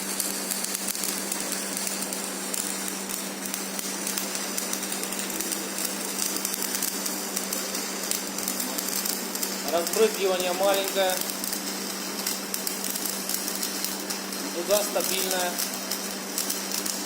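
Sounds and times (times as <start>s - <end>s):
welding arc crackling: 0.0s - 17.0s.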